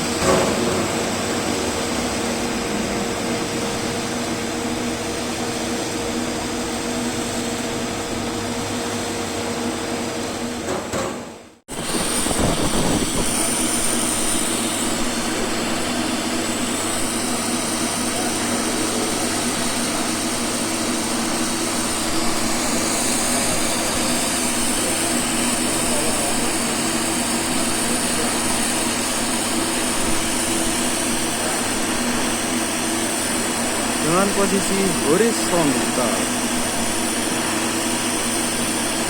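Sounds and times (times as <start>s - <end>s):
welding arc hissing and buzzing: 11.7s - 39.0s
electrical hum: 33.5s - 37.6s.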